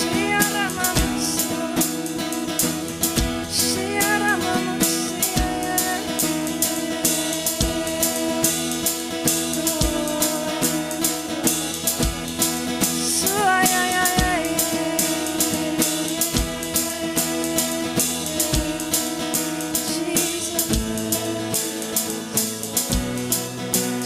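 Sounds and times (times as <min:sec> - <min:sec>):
busy cymbals: 0:00.0 - 0:24.0
drum kit with bass drum hits: 0:02.6 - 0:03.6, 0:11.6 - 0:13.1, 0:13.8 - 0:14.7, 0:15.4 - 0:17.5, 0:22.9 - 0:23.4.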